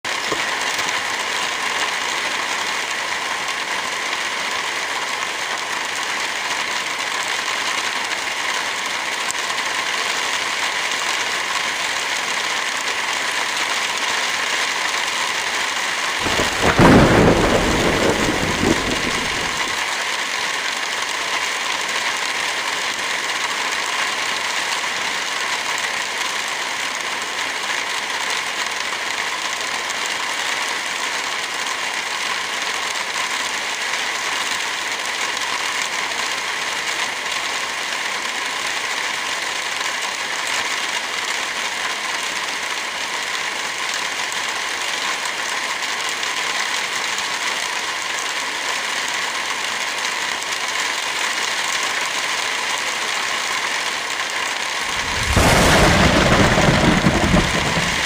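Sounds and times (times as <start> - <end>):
steady rain falling: 0.1 - 58.0
low roll of thunder: 16.2 - 19.8, 54.9 - 58.0.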